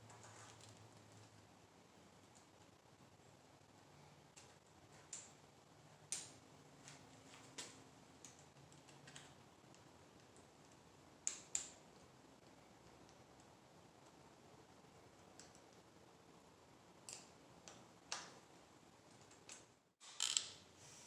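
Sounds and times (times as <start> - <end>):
small tools clicking and tapping: 6.0 - 10.5, 17.0 - 18.4.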